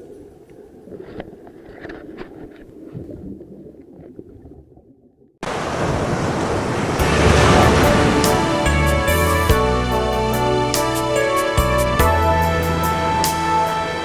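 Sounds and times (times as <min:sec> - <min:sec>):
sea rushing: 0:05.4 - 0:11.6
wind noise: 0:05.6 - 0:10.2
music: 0:07.0 - 0:14.0.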